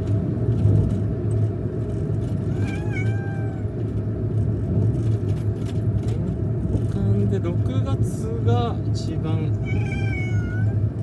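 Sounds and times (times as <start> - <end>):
cat meowing: 2.4 - 3.8, 9.6 - 10.8.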